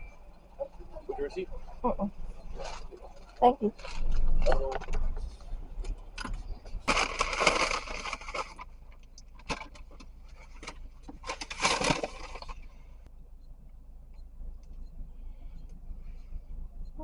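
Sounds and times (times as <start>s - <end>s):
low steady hum: 0.0s - 17.0s
rustling and crinkling handling: 6.7s - 12.8s.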